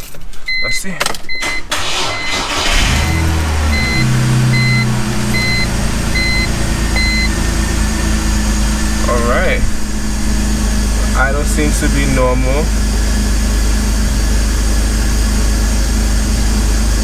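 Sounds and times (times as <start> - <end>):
car engine starting and idling: 0.0 - 17.0
warning chime beeping: 0.5 - 7.7.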